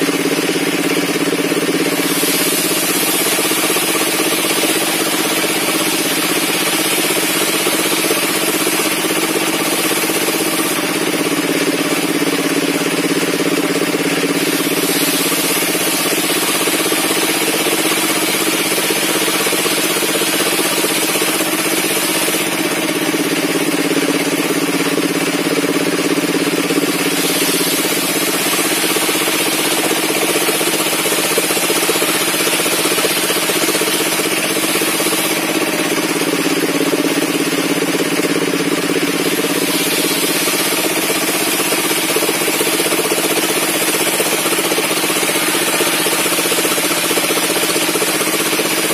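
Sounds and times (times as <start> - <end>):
engine running with rapid pulse: 0.0 - 48.9.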